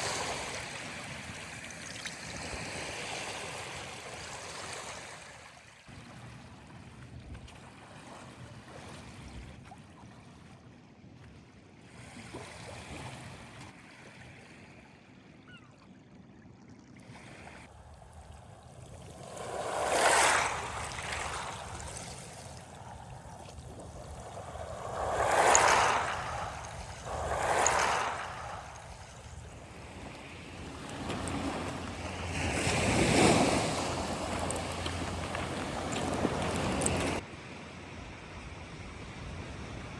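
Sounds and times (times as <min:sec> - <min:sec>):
waves washing onto shore: 0:00.0 - 0:06.8, 0:17.6 - 0:37.2.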